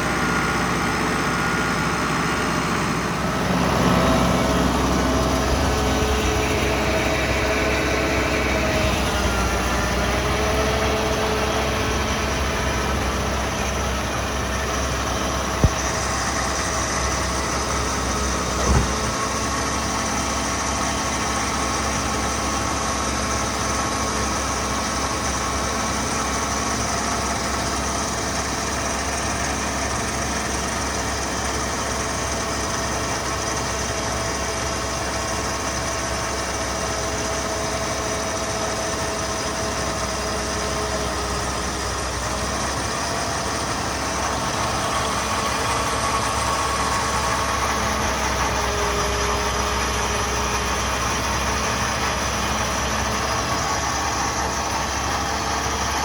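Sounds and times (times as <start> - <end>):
engine running steadily: 0.0 - 56.0
brief thump: 15.6 - 16.3, 18.6 - 19.2.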